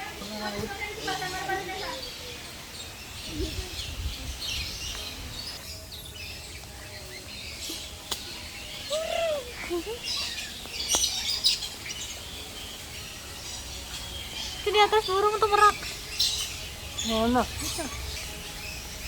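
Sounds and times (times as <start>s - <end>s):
birds chirping: 0.0s - 19.0s
arching bird call: 5.4s - 19.0s.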